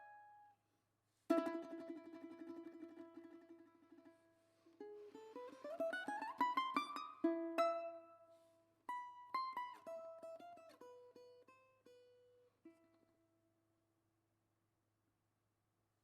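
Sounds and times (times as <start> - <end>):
plucked string instrument: 1.3 - 13.1.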